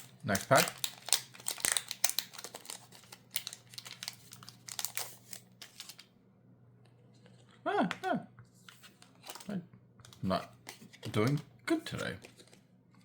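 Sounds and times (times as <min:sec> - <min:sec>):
foil wrapper crinkling and tearing: 0:00.0 - 0:06.1.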